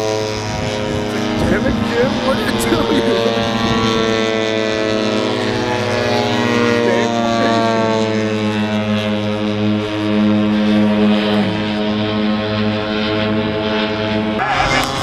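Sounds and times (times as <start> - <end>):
model airplane engine droning: 0.0 - 15.0.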